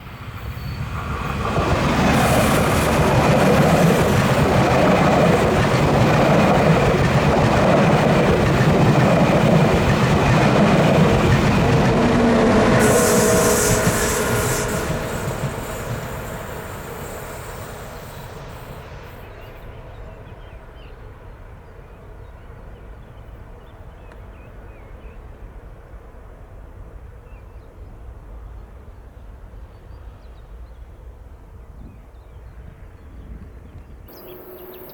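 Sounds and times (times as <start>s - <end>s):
train wheels squealing: 0.0s - 7.2s, 8.4s - 20.9s, 34.1s - 34.9s
train wheels rumbling on track: 0.0s - 23.6s, 34.1s - 34.9s.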